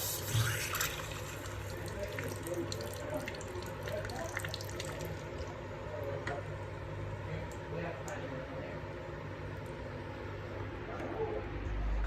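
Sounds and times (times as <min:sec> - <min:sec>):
water running from tap: 0:00.0 - 0:05.6.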